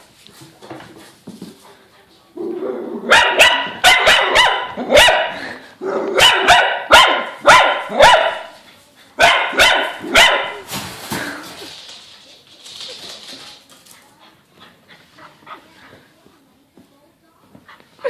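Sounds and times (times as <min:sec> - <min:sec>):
dog barking: 0:03.1 - 0:08.6, 0:09.2 - 0:10.6.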